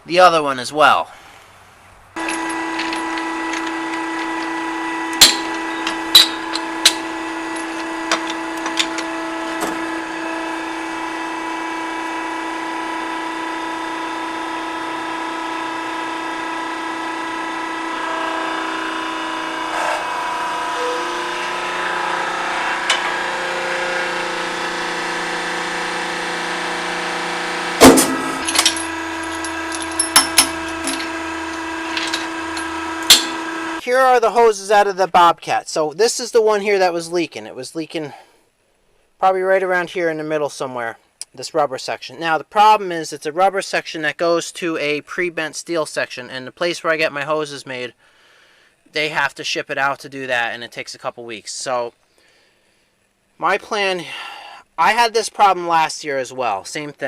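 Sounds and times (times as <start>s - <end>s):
steady hum: 2.1s - 11.2s, 20.8s - 33.8s
hand tools clinking on metal: 2.2s - 9.6s, 27.8s - 33.4s.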